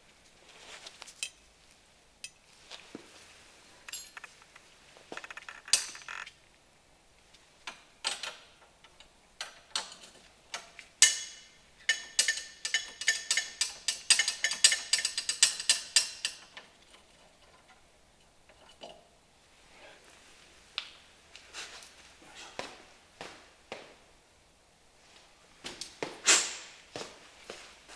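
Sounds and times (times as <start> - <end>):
metal tools clicking and clinking: 1.1 - 1.4, 3.9 - 4.6, 5.2 - 6.3, 8.0 - 19.0.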